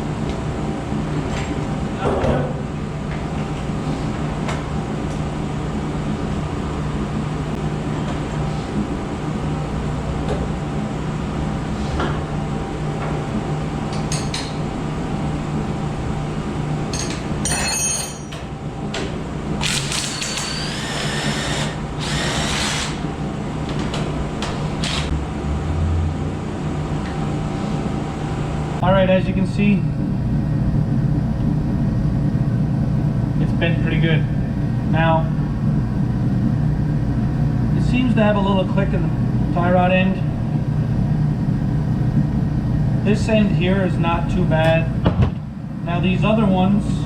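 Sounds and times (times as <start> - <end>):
steady mechanical hum: 0.0 - 47.0
metal tools clinking: 17.0 - 18.4
small power tool spinning: 19.6 - 23.0.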